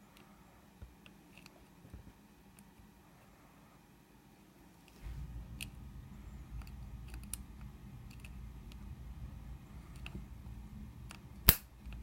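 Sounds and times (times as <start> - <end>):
low handling rumble: 5.0 - 12.0.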